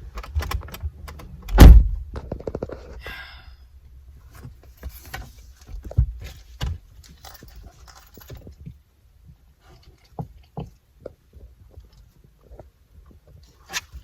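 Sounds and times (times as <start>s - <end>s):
car door shutting: 1.5s - 2.0s.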